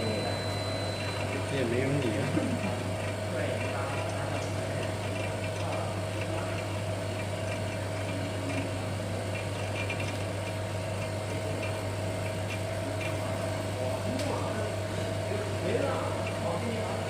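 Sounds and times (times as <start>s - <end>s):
steady high tone: 0.0s - 1.2s
constant whir: 0.0s - 17.0s
machine humming: 0.0s - 17.0s.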